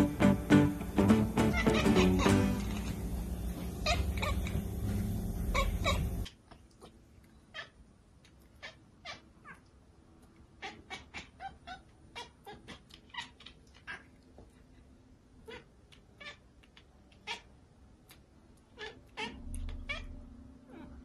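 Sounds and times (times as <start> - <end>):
cats meowing: 1.4 - 4.6, 5.4 - 6.3, 10.6 - 14.2, 18.7 - 21.0.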